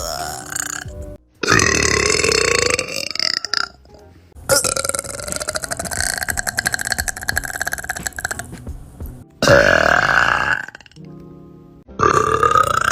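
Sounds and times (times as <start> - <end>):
woman burping: 0.0 - 3.2.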